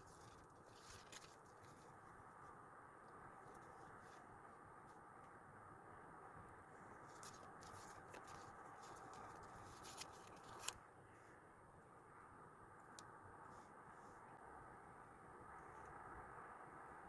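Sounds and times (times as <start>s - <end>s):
paper rustling: 0.0s - 1.9s, 7.1s - 10.8s
steady low hiss: 0.0s - 17.0s.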